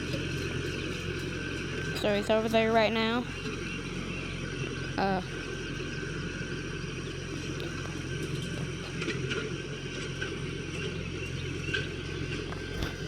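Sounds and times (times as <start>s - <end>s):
tractor engine droning: 0.0s - 13.0s.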